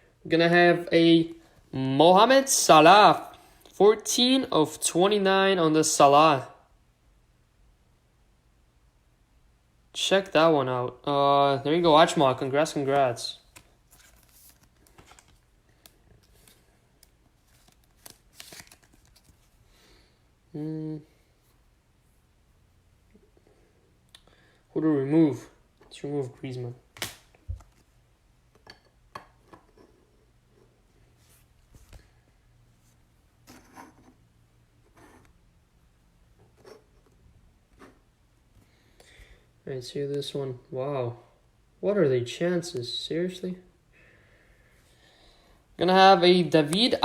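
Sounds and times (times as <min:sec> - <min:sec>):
trading cards rustling and clicking: 0:12.8 - 0:19.6, 0:27.0 - 0:27.9.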